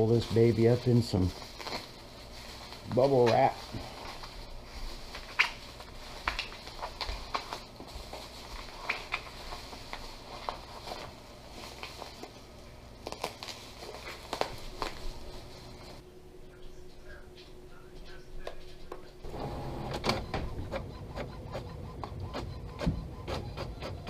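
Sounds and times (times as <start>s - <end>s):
bubble wrap crinkling: 0.0s - 16.0s.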